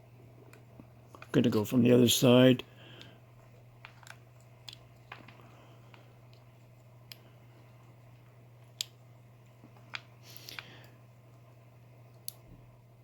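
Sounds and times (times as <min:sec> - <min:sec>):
low steady hum: 0:00.0 - 0:13.0
small clicks and taps: 0:03.8 - 0:07.3, 0:08.1 - 0:09.0.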